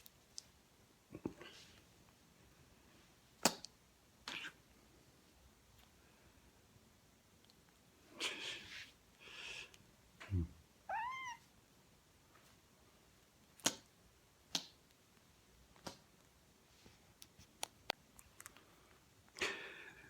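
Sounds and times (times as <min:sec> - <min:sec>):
kitten meowing: 0:10.9 - 0:11.5.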